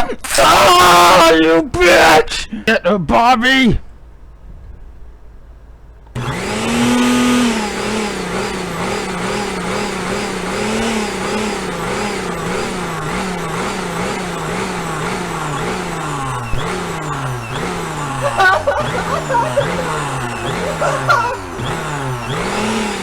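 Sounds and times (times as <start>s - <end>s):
chainsaw revving: 6.1s - 23.0s.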